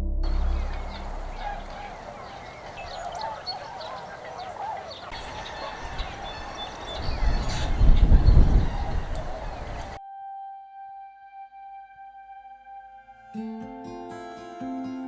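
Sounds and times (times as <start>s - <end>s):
swans calling: 0.2s - 10.0s.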